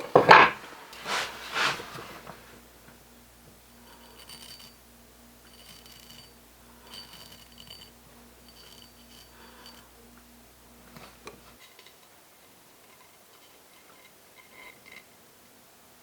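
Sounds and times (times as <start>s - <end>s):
faint steady hum: 0.0s - 16.0s
steel ringing high tone: 5.4s - 10.0s.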